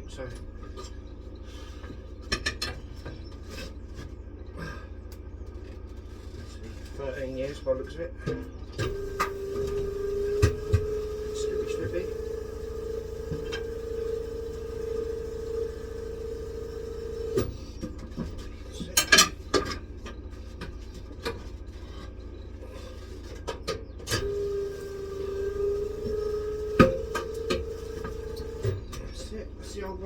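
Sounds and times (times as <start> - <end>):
steady machine hum: 4.4 - 18.7, 24.1 - 30.0.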